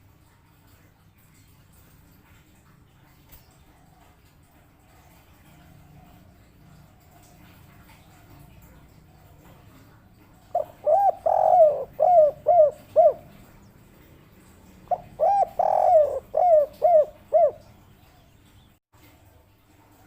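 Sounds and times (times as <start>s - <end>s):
dove cooing: 3.6s - 18.4s.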